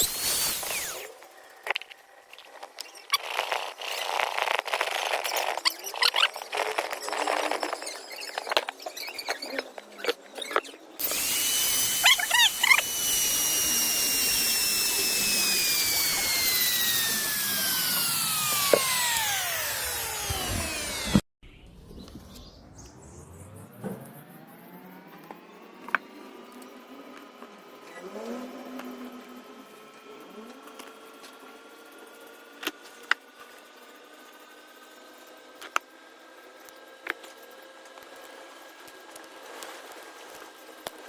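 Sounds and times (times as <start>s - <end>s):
power tool motor whine: 0.0s - 1.9s, 11.0s - 26.0s
scratchy scraping and rubbing: 2.4s - 18.0s.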